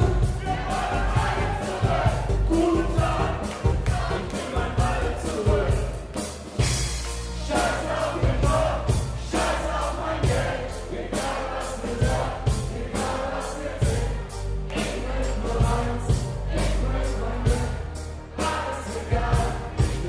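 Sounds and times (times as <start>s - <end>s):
voices singing: 0.0s - 6.2s, 7.4s - 20.0s
drum beat: 0.0s - 15.0s, 15.6s - 16.7s, 17.4s - 20.0s
bass line: 0.0s - 20.0s.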